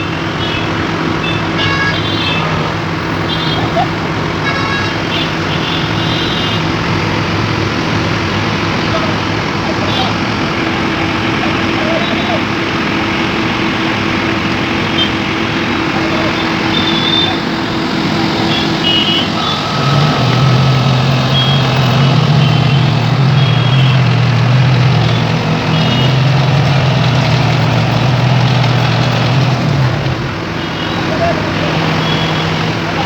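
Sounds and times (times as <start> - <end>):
vibratory hammer drone: 12.6 - 30.5.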